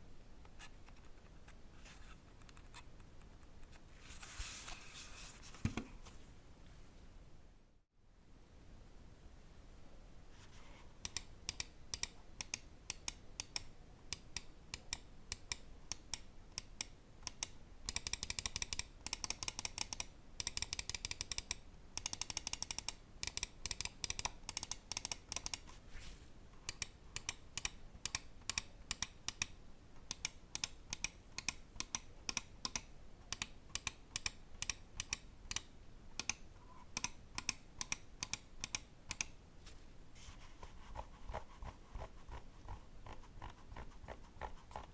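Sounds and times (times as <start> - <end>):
mouse clicking: 11.0 - 25.8, 26.6 - 39.4.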